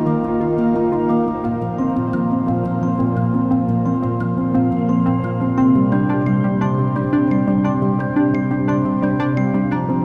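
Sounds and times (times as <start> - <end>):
soft mallet percussion tune: 0.0 - 10.0.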